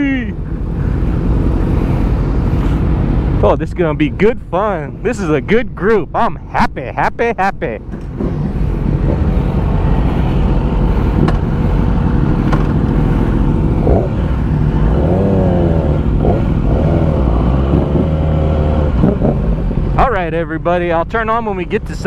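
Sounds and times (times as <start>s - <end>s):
motorcycle engines revving: 7.8s - 22.0s.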